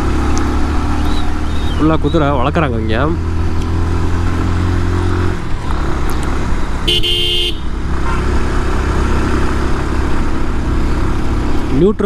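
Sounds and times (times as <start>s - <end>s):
motorcycle engine running: 0.0s - 12.0s
vehicle horn toot: 6.8s - 8.4s.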